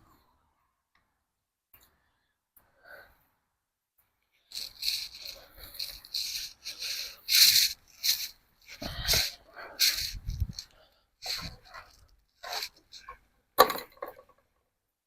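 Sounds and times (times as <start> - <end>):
rustling and scraping: 4.4 - 14.4.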